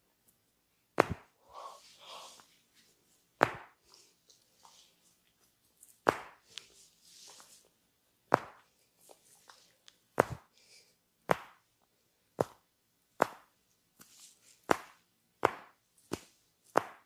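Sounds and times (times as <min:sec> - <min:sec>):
hands slapping bare skin: 0:01.0 - 0:01.4, 0:03.4 - 0:04.0, 0:05.8 - 0:06.7, 0:08.3 - 0:08.8, 0:09.4 - 0:10.6, 0:11.2 - 0:11.7, 0:12.4 - 0:17.0
hands rubbing on skin: 0:05.8 - 0:07.7, 0:13.3 - 0:15.0.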